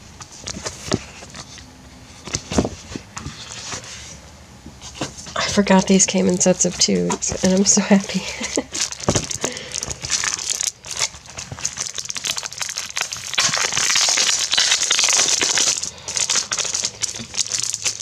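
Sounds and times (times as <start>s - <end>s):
plastic packaging crinkling: 4.8s - 18.0s.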